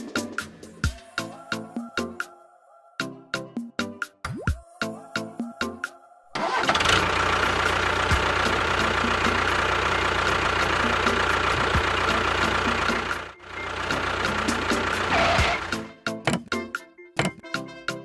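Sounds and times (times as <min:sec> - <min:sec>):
music with clicking beat: 0:00.0 - 0:02.3, 0:03.4 - 0:06.0, 0:08.0 - 0:09.6, 0:10.3 - 0:18.0
steady engine running: 0:06.4 - 0:15.9.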